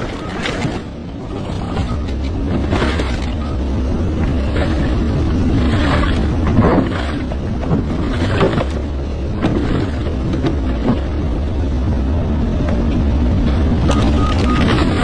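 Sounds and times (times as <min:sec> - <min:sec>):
excavator engine rumbling: 0:00.0 - 0:15.0.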